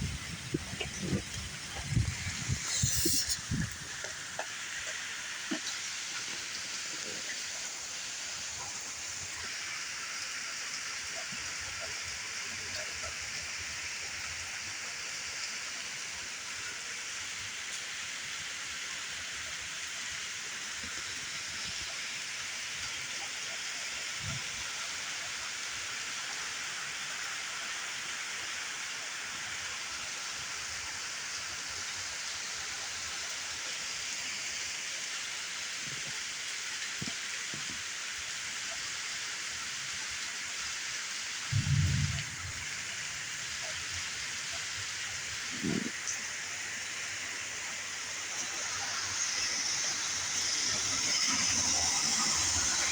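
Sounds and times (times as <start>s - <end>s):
steady rain: 0.0s - 52.9s
loud low thump: 41.5s - 43.2s.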